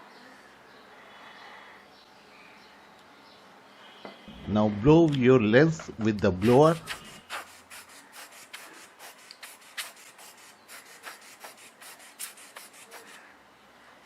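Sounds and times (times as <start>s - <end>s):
air blower puffs: 6.3s - 13.3s.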